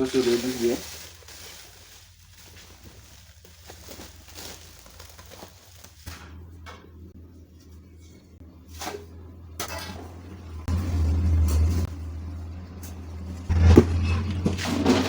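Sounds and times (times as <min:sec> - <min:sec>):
rustling: 0:00.0 - 0:06.4
low engine hum: 0:00.0 - 0:15.0.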